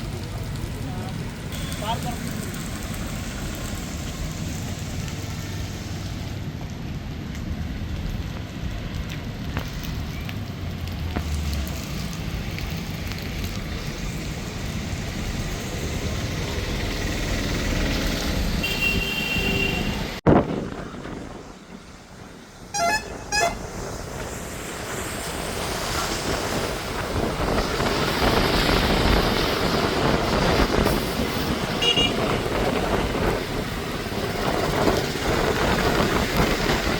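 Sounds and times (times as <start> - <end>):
road traffic noise: 0.0 - 36.9
vehicle horns honking: 18.6 - 20.2, 22.7 - 23.7, 31.8 - 32.4.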